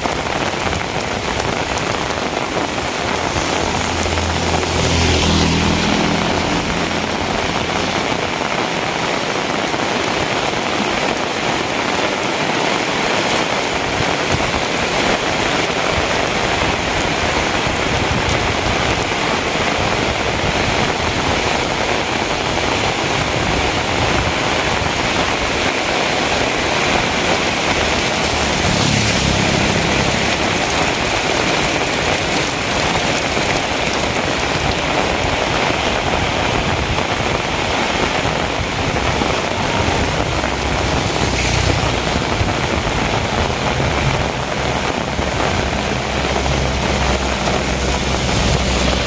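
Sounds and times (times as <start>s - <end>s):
vehicle engine humming: 0.0s - 11.0s, 22.2s - 49.0s
heavy rain falling: 0.0s - 49.0s.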